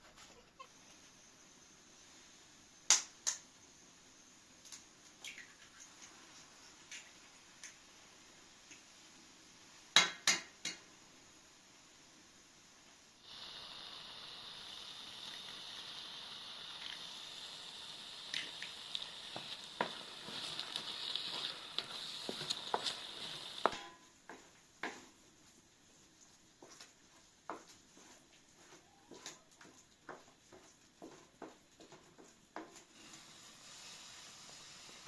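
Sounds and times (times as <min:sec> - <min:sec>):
oil sizzling in frying pan: 0:00.6 - 0:35.0
stirring taps and scrapes: 0:16.8 - 0:33.2.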